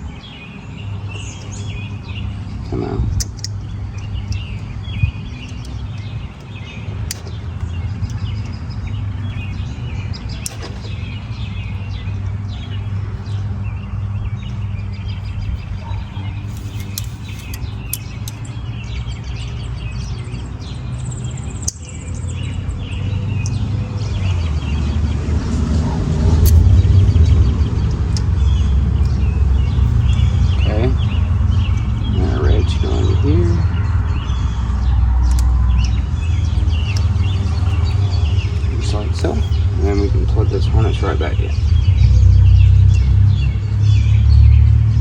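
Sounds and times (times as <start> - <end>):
birds chirping: 0.0 - 45.0
steady low rumble: 0.0 - 45.0
sharp clicks: 1.3 - 9.6, 10.2 - 11.4, 16.4 - 19.0, 21.5 - 22.0, 34.6 - 41.8.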